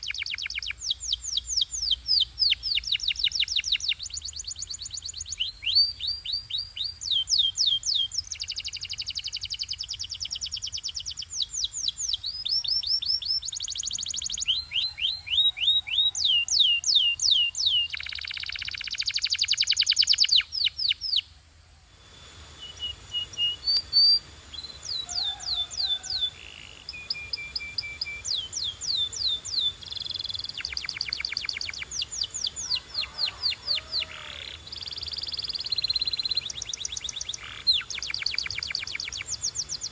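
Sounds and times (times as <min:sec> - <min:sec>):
canary singing: 0:00.0 - 0:21.3, 0:22.1 - 0:39.9.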